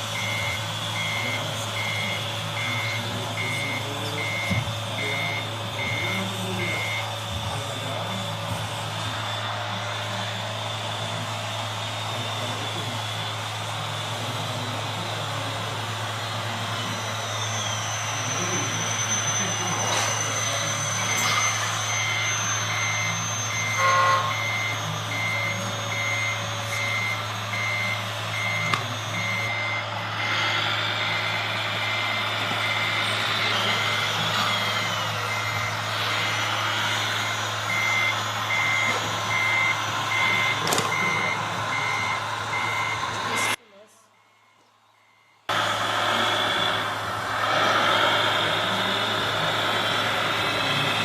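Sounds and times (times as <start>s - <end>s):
reversing beeper: 0.0s - 51.0s
steady low hum: 0.0s - 51.0s
whining motors: 0.0s - 51.0s.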